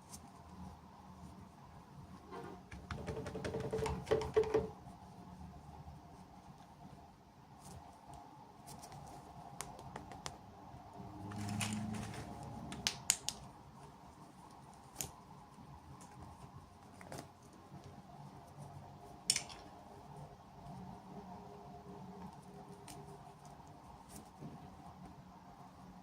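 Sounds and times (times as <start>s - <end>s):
packaging rustle: 11.2s - 12.8s.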